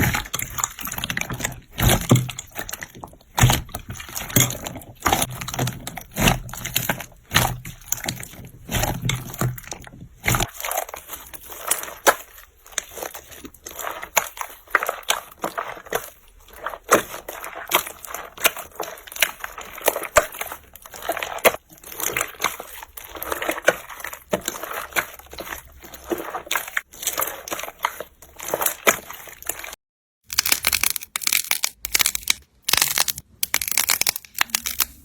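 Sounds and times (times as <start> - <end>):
sharp clicks and pops: 30.3 - 35.0.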